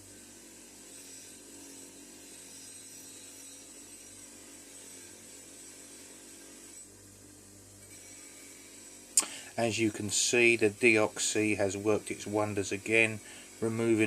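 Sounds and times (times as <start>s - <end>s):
spinning wire wheel whirring: 7.8s - 14.0s.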